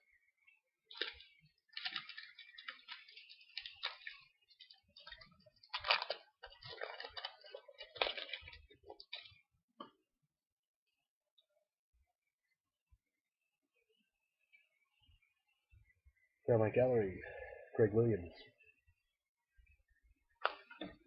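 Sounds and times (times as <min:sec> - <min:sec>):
foil card packs crinkling: 0:00.9 - 0:09.4.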